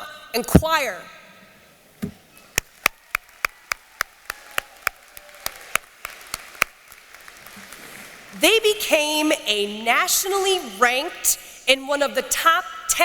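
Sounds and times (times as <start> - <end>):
hands clapping: 2.6 - 8.4.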